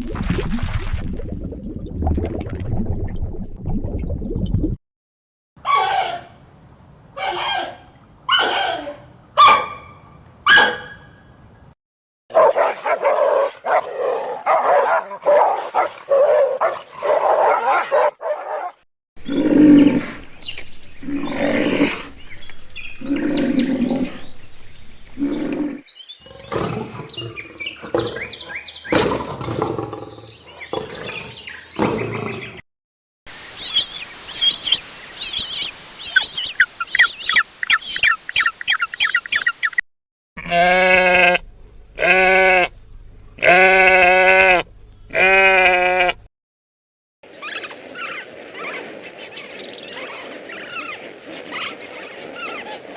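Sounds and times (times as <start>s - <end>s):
animal calls: 25.2s - 32.6s, 47.3s - 52.9s
loud pitched animal calls: 26.3s - 32.6s.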